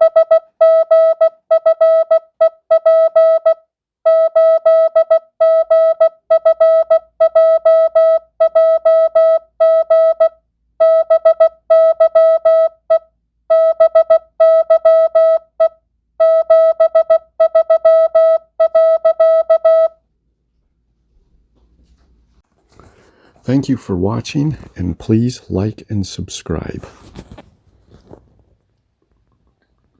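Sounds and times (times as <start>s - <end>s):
morse code beeping: 0.0s - 20.0s.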